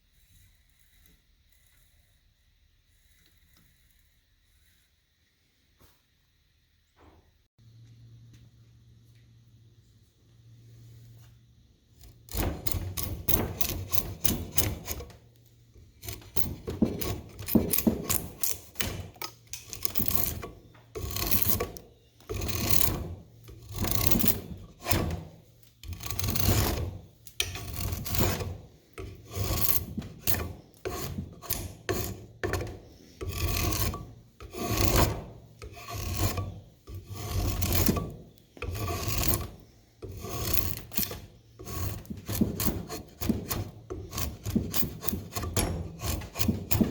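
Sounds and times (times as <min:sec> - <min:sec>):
rasp scraping strokes: 0:12.0 - 0:15.2, 0:15.8 - 0:46.9.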